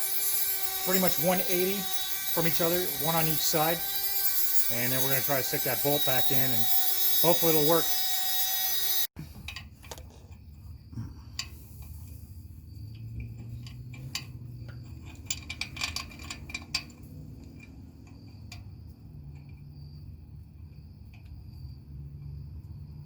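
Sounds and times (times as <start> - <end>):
metallic clinks of hand tools: 0.0 - 8.0
crickets chirping: 0.0 - 23.0.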